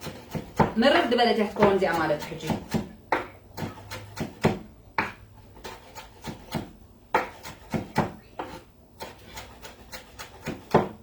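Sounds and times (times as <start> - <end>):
knife chopping on wooden board: 0.0 - 11.0.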